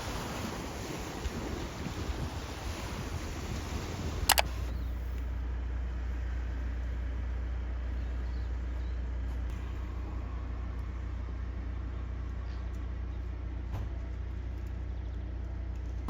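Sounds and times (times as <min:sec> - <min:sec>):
sharp clicks: 0:04.3 - 0:04.8.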